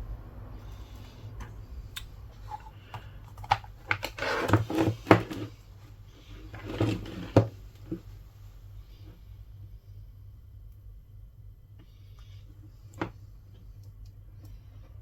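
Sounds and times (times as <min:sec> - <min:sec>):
scraping and rustling: 0:02.3 - 0:08.2.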